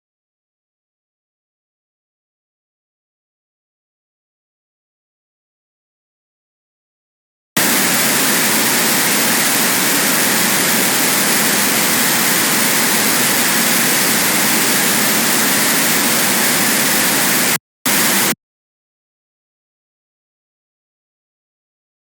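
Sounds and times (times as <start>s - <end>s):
harsh electronic static noise: 7.6s - 18.4s.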